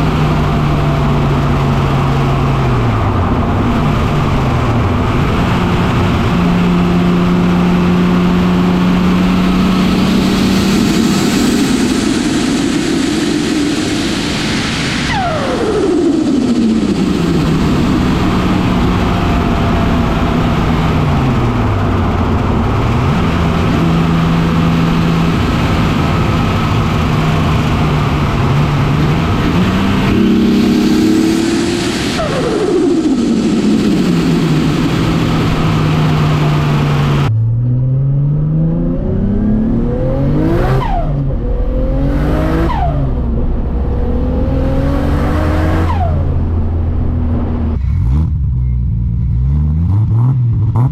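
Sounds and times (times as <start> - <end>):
car engine running: 0.0 - 50.9
turbo whistle sweeping down: 11.5 - 20.4.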